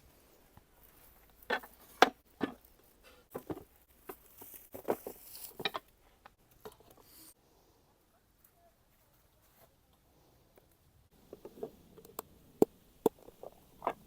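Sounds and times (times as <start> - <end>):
faint rustle: 2.6 - 11.8.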